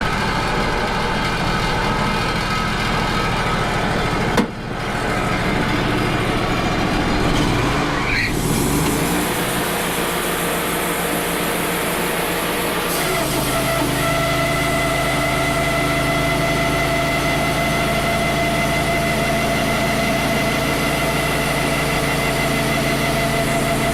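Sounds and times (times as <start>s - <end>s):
bandsaw mill cutting log: 0.0s - 23.9s.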